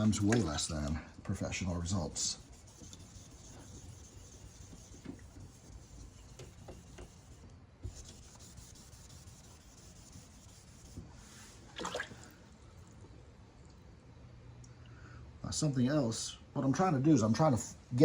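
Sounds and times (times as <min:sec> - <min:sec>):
wet sandpaper rubbing on paint: 0:01.6 - 0:11.6.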